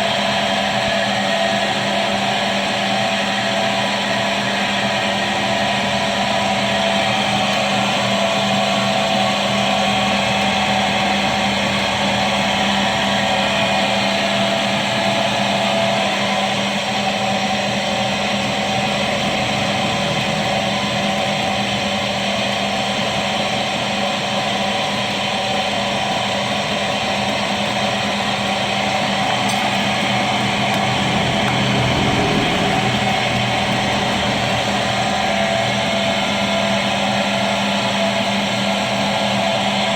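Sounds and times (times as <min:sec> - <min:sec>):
drill motor humming: 0:04.7 - 0:37.8.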